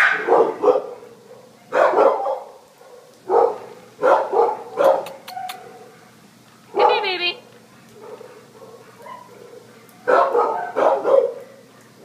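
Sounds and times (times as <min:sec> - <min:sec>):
dog barking: 0:00.0 - 0:07.1, 0:07.9 - 0:12.0.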